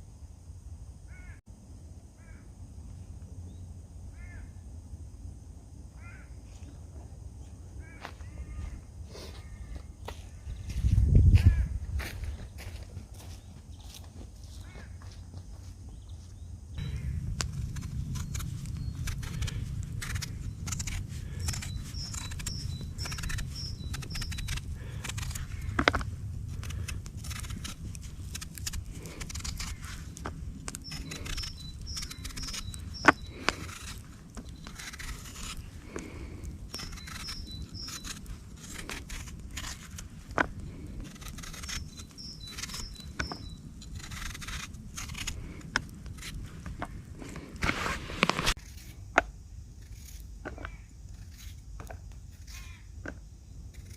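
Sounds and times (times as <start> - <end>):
low rumble: 16.5 - 48.6
irregular clicks and scraping: 16.8 - 53.9.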